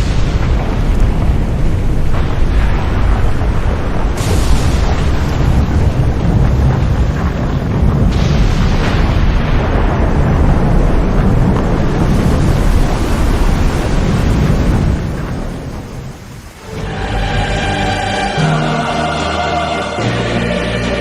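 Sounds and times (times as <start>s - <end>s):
booming drums and brass: 0.0s - 19.0s
epic orchestral music: 16.6s - 21.0s.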